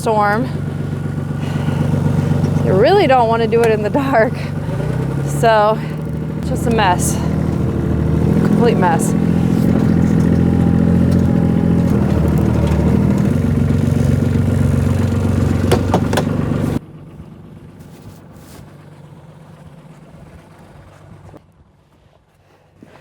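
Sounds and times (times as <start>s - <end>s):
motor humming: 0.0s - 16.8s.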